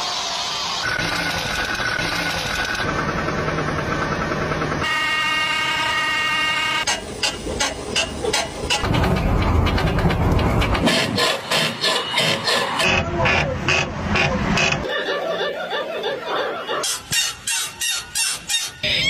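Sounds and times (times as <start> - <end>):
car engine running: 0.8 - 5.1.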